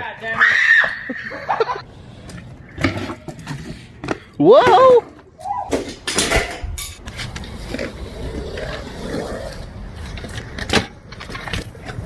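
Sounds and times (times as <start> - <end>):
bmx bike clattering: 2.2 - 8.8.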